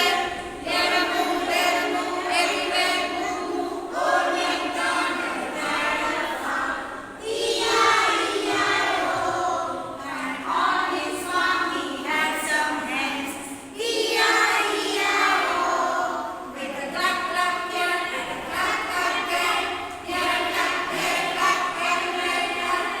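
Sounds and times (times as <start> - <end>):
choir of high voices singing: 0.0 - 23.0.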